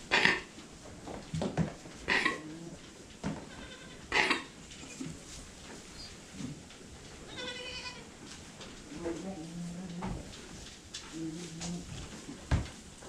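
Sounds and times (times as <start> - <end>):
goats bleating: 7.3 - 8.1.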